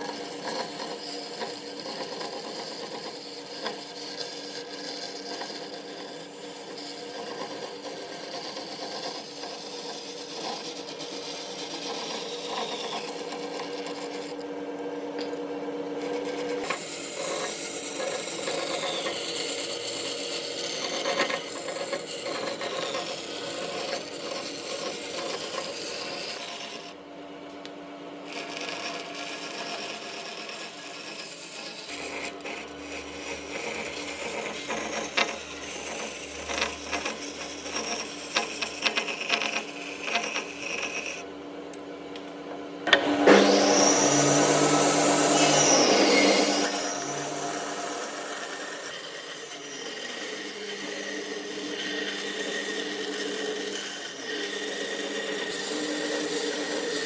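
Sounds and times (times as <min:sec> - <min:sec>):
steady machine hum: 0:28.2 - 0:57.0
clicks: 0:41.7 - 0:48.5.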